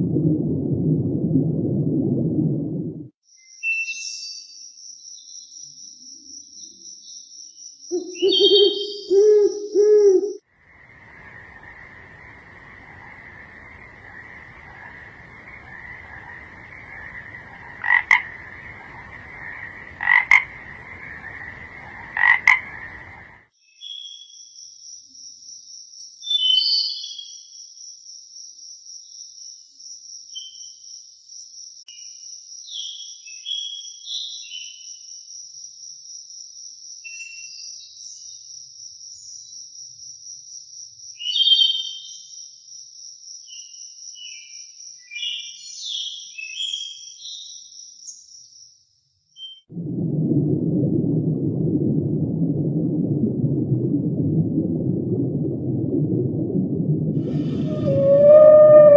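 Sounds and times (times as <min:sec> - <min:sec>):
frog chorus trilling: 0:07.9 - 0:09.8, 0:11.1 - 0:23.3, 0:57.7 - 0:58.9
loud frog croaks: 0:11.2 - 0:23.3, 0:57.2 - 0:58.9
high-pitched trill: 0:57.7 - 0:58.9.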